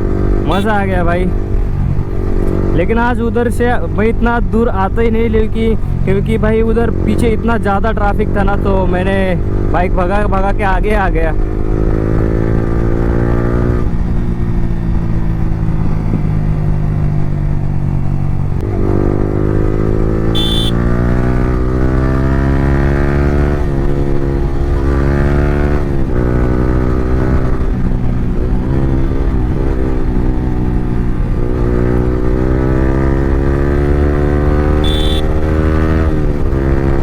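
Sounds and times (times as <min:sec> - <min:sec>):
motorcycle engine revving: 0:00.0 - 0:03.7, 0:11.2 - 0:37.0
short high beep: 0:20.4 - 0:20.8, 0:34.8 - 0:35.4.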